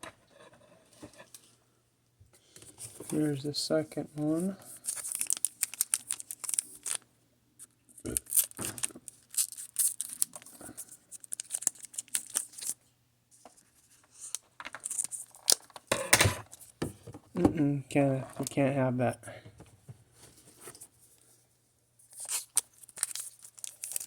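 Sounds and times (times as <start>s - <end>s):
foil wrapper tearing and crinkling: 4.7s - 7.0s, 8.0s - 12.8s, 14.7s - 15.9s, 22.1s - 24.0s.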